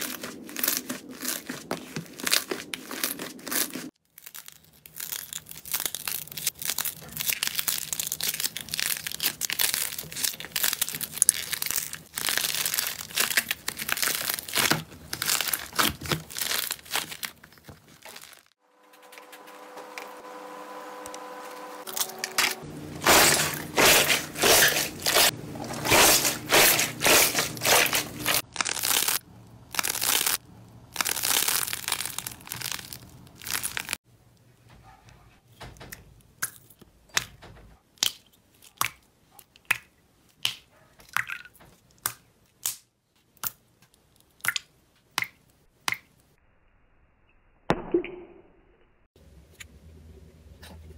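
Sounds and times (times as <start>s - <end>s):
loud regular squishes: 0.0s - 18.6s, 21.8s - 34.0s
slime crackling and crinkling: 0.0s - 18.6s, 22.9s - 34.0s.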